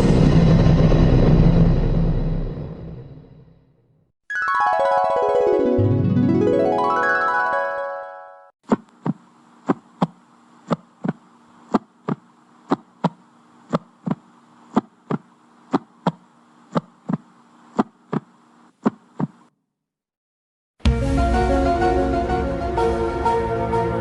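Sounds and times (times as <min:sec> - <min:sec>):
faint steady hum: 0:08.7 - 0:19.4.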